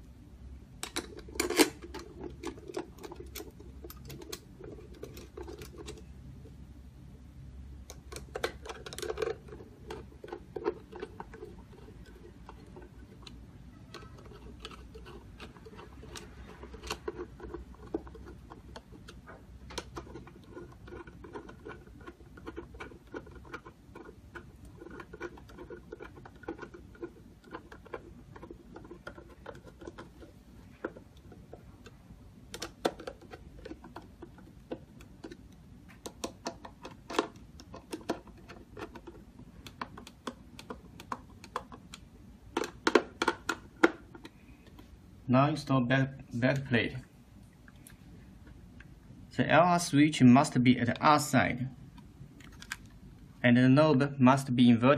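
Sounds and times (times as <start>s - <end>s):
lock parts clicking: 0.8s - 6.1s, 7.8s - 44.8s.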